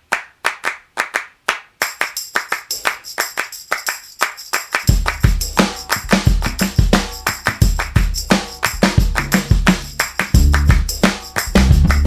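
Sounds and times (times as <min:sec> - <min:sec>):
rhythmic handclaps: 0:00.0 - 0:12.0
jingling tambourine-like percussion: 0:01.8 - 0:12.0
deep bass and drum beat: 0:04.9 - 0:12.0.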